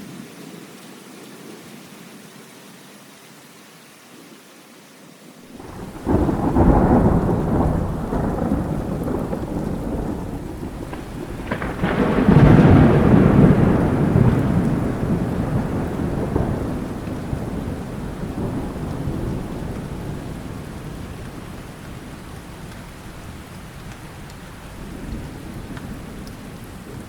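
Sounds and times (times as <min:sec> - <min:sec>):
steady rain: 0:00.0 - 0:27.0
thunder rumbling: 0:05.5 - 0:27.0.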